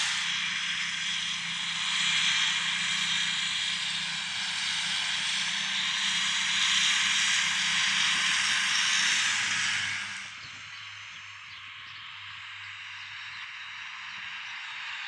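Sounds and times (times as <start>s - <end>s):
tractor engine: 0.0s - 14.4s
mowers cutting grass hiss: 0.0s - 15.0s.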